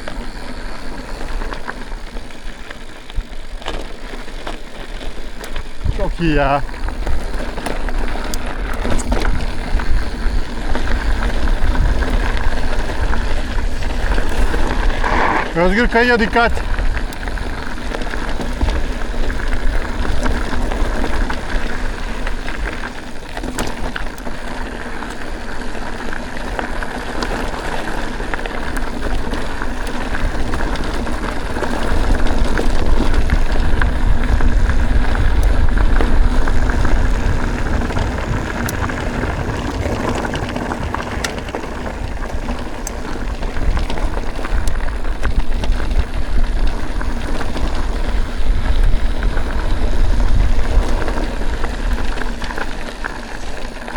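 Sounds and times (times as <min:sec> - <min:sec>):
bike clicks and rattles: 0:00.0 - 0:53.9
bike tyre noise: 0:00.0 - 0:53.9
wind buffeting microphone: 0:05.5 - 0:22.2, 0:29.9 - 0:52.8.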